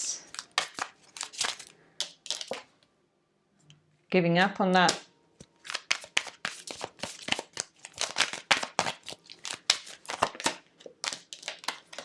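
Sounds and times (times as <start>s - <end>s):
cards being shuffled: 0.0s - 2.7s, 5.4s - 12.0s.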